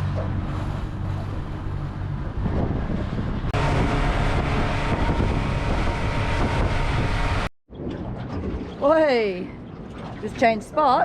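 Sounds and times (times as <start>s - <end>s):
boat motor running: 0.0s - 7.5s
wind noise on microphone: 0.0s - 11.0s.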